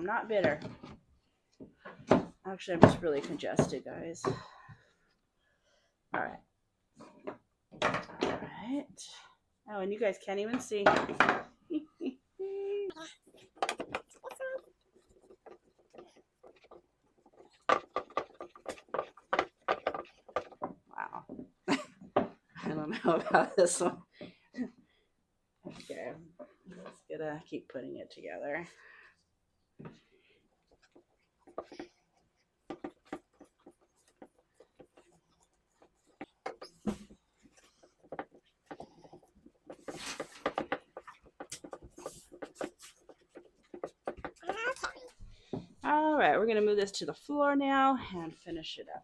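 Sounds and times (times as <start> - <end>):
parts knocking and clacking: 13.2 - 22.4, 30.7 - 45.7
rustling scrapes: 30.6 - 45.2.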